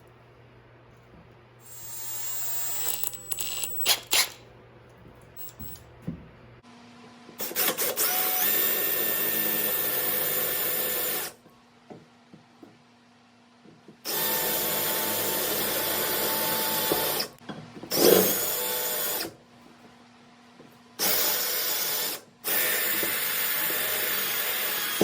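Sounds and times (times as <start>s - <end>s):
drill cutting metal: 1.6s - 4.4s, 14.1s - 17.3s, 21.0s - 25.0s.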